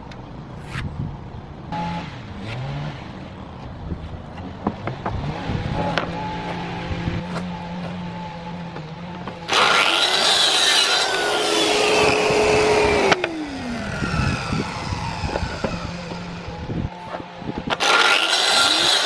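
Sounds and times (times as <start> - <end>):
electric saw cutting wood: 5.1 - 19.0.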